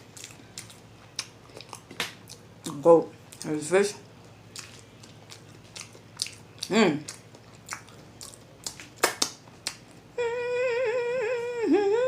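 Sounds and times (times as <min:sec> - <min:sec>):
crunching eating sounds: 0:00.0 - 0:10.0
man humming loudly: 0:10.2 - 0:12.0.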